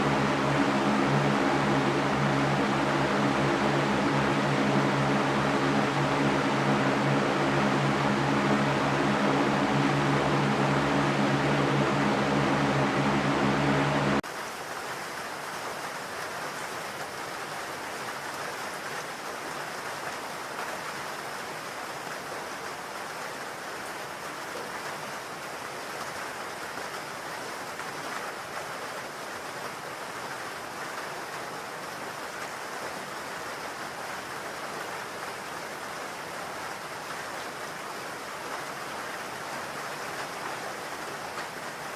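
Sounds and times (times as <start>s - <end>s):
humming noise with low tones: 0.0s - 14.2s.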